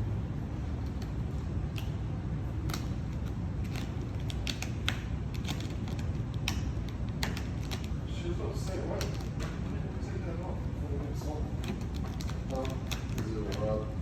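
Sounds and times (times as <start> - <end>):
low shop background rumble: 0.0 - 14.0
light clicks and ticks of handwork: 0.7 - 9.8, 11.0 - 13.9.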